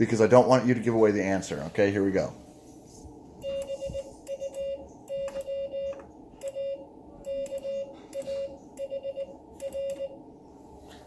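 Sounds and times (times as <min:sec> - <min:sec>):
morse code beeps: 0:03.4 - 0:10.2.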